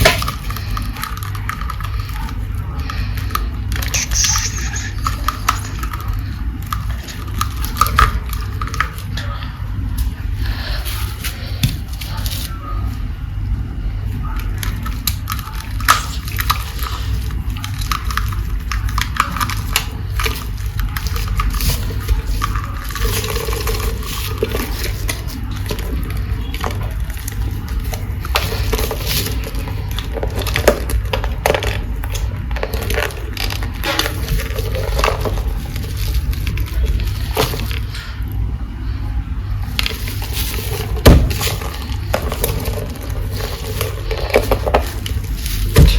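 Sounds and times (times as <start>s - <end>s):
low hum: 3.8s - 6.7s.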